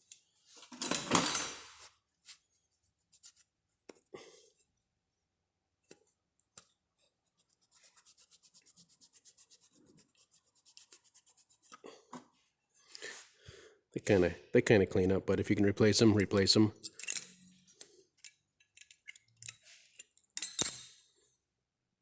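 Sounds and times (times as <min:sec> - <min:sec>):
scratchy scrubbing by hand: 0:06.9 - 0:12.0
metal parts clicking and tapping: 0:16.8 - 0:21.0.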